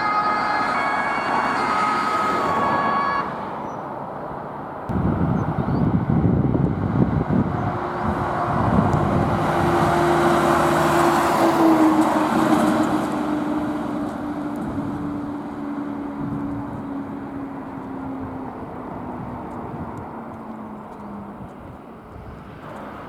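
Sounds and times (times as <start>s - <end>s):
fire engine driving past: 0.0s - 23.0s.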